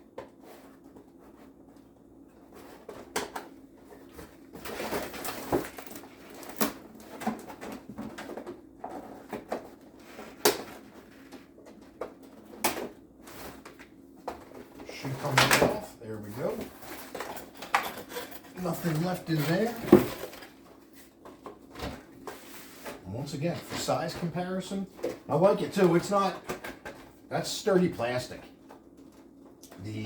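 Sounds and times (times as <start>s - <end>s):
plastic packaging rustling: 4.0s - 8.4s.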